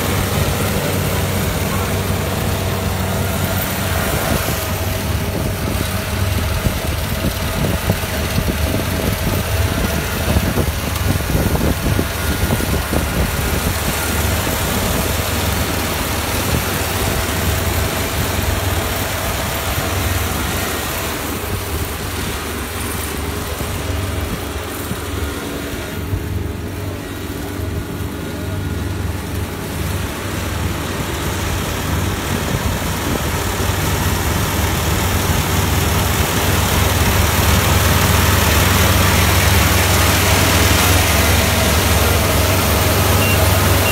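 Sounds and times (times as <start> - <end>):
combine harvester engine hum: 0.0 - 43.9
machinery clatter: 0.0 - 43.9.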